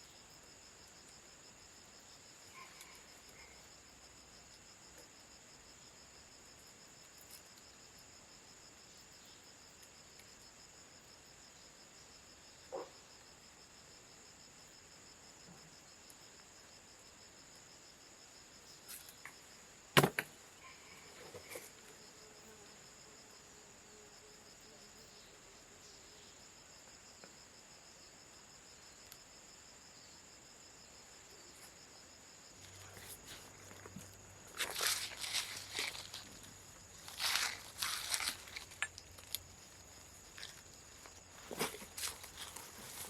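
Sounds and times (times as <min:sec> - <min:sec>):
insect trilling: 0:02.0 - 0:03.8, 0:32.6 - 0:43.0
sharp knock: 0:20.0 - 0:20.3.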